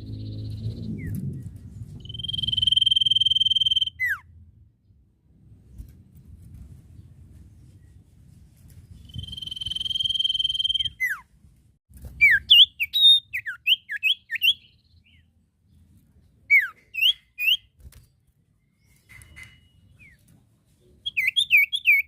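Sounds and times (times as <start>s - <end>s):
bird singing whistled notes: 0.0s - 4.3s, 8.9s - 11.2s, 12.2s - 15.3s, 16.5s - 17.8s, 21.0s - 22.0s.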